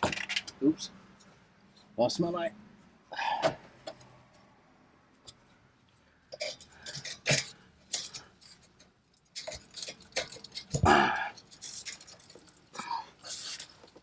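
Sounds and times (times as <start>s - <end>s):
tools and metal parts clinking: 0.0s - 0.6s, 6.3s - 14.0s.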